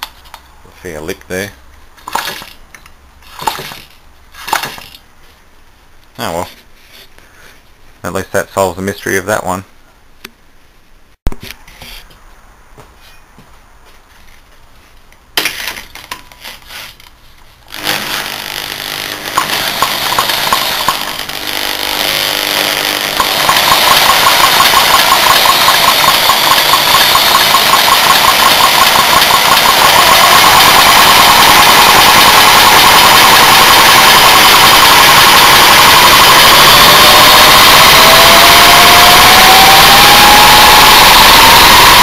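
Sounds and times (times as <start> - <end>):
petrol engine starting and running: 17.7 - 42.0.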